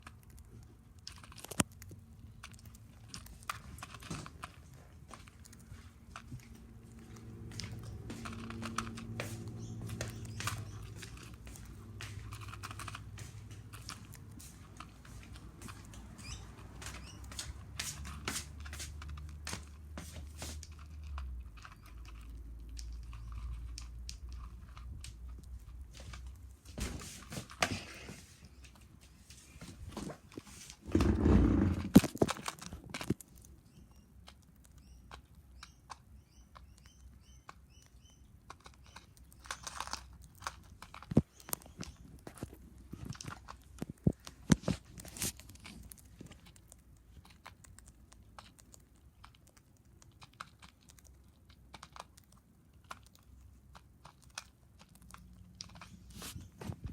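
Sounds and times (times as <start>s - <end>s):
bird chirping: 7.2s - 12.2s, 15.7s - 17.7s, 33.5s - 39.8s, 41.1s - 42.2s.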